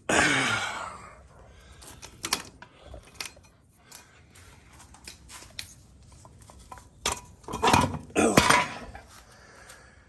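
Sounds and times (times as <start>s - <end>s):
tools clicking and scraping: 1.7s - 8.6s.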